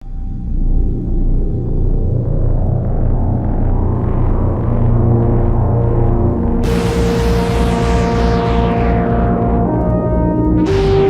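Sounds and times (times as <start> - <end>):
synthesizer droning bass tone: 0.0 - 11.0
higher held synth notes: 5.6 - 11.0.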